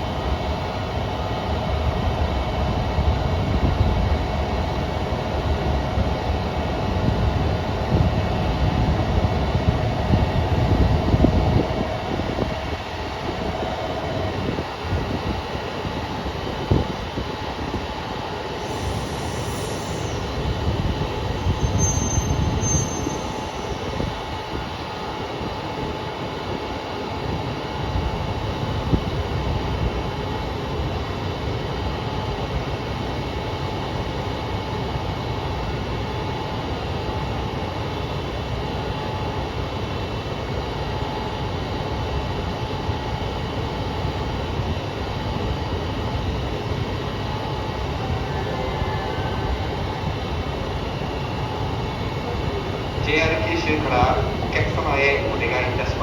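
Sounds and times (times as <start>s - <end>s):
diesel railcar idling: 43.2s - 56.0s.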